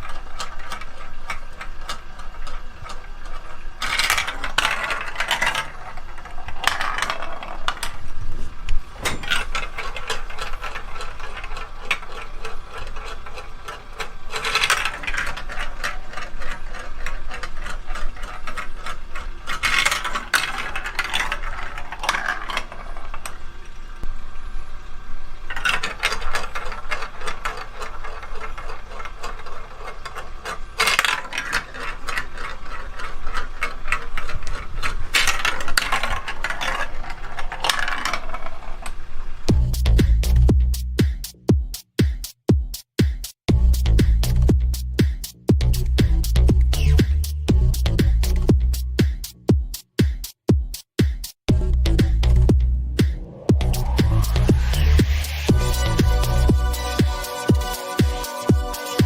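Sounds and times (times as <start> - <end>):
marble run clicking: 0.0 - 8.2, 9.2 - 23.7, 25.5 - 41.4, 43.7 - 50.1, 53.0 - 59.0
marbles clattering down plastic ramps: 0.0 - 8.2, 9.0 - 23.5, 25.5 - 40.4.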